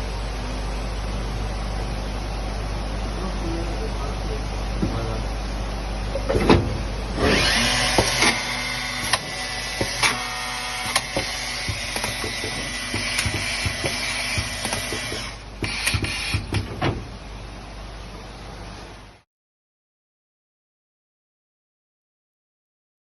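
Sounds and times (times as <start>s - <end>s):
machine motor and spindle noise: 6.2s - 17.1s
sharp machine knocks and clacks: 7.9s - 16.9s.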